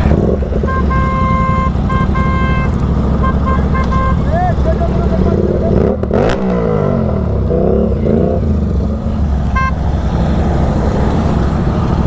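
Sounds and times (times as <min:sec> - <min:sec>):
motorcycle engine droning: 0:00.0 - 0:12.0
short horn beep: 0:00.6 - 0:04.6, 0:09.5 - 0:09.8.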